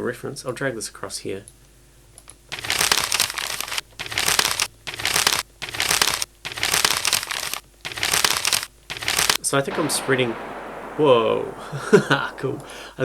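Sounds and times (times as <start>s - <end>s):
paper crumpling crackle: 2.5s - 9.4s.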